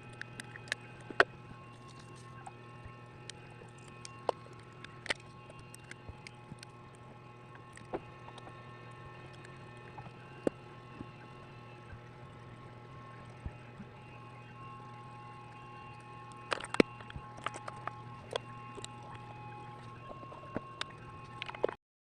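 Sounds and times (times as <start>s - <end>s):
steady low hum: 0.0s - 21.8s.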